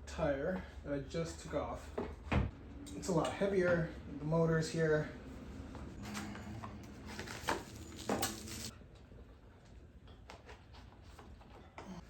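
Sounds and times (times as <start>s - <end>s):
rustling and scraping: 6.0s - 8.7s.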